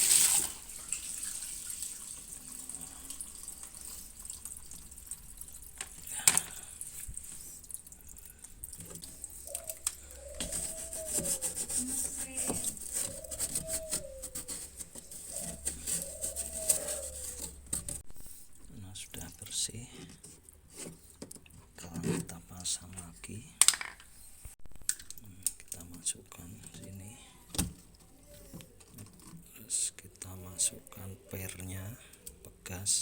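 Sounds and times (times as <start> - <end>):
water running and splashing: 0.0 - 9.8.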